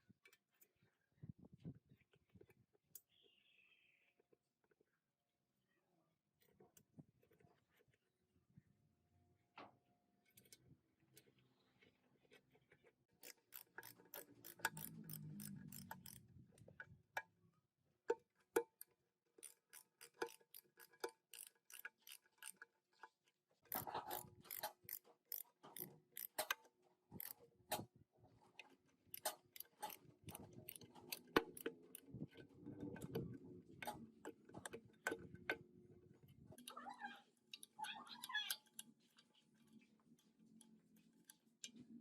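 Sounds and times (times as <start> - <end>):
metallic clicks and clinks: 13.2 - 16.9, 29.1 - 35.3.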